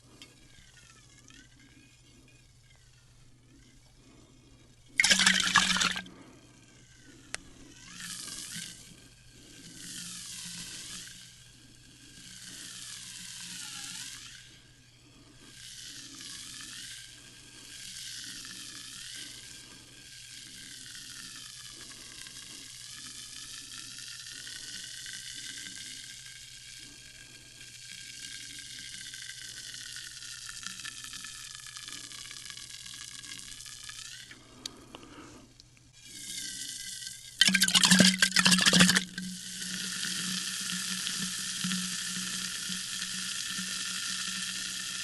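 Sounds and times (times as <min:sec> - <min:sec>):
sparkling water fizzing: 0:05.0 - 0:06.0, 0:37.4 - 0:39.2.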